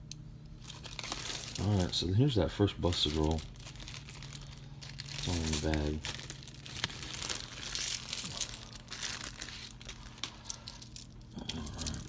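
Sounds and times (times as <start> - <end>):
bag crinkling: 0.6 - 2.1, 2.9 - 12.0
coins clicking: 3.0 - 12.0.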